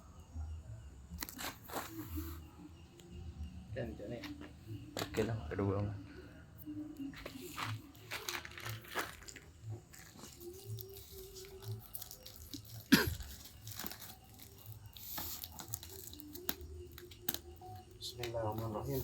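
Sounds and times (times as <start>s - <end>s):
packaging crinkling and rustling: 7.3s - 19.0s.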